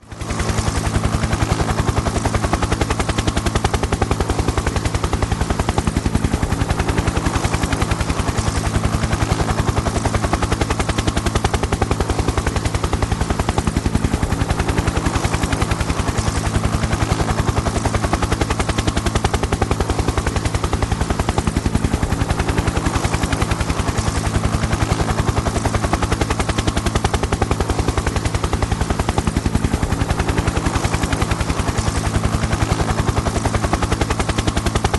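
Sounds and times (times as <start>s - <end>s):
helicopter rotor blades chopping: 0.0s - 34.9s.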